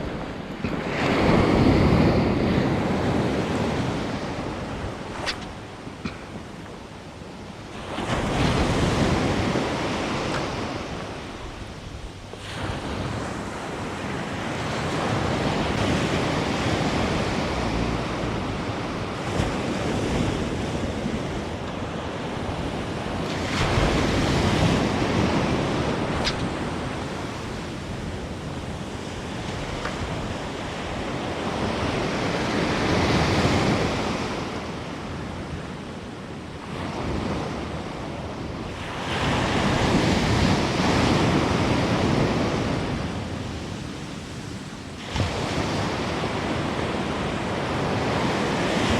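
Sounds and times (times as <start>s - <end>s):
wind buffeting microphone: 0.0s - 35.8s
surf breaking on beach: 7.7s - 34.8s.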